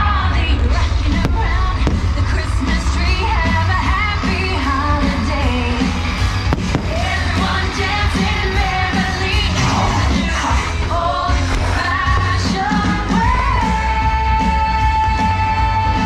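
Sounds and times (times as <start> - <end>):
pop-rock song with singing: 0.0 - 16.0
firework bang: 0.5 - 4.3, 6.4 - 7.7, 10.6 - 13.5.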